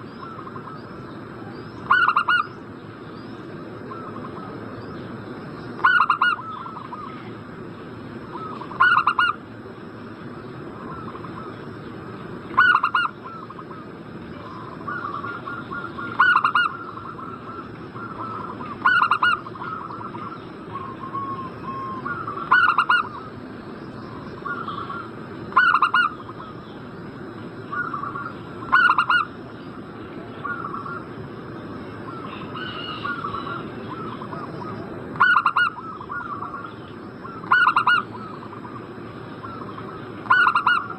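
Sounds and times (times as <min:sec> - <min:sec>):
dove calling loudly: 0:01.8 - 0:02.6, 0:05.8 - 0:07.3, 0:08.3 - 0:09.4, 0:10.8 - 0:11.6, 0:12.5 - 0:23.5, 0:24.1 - 0:26.8, 0:27.6 - 0:29.4, 0:30.2 - 0:31.2, 0:32.0 - 0:40.9.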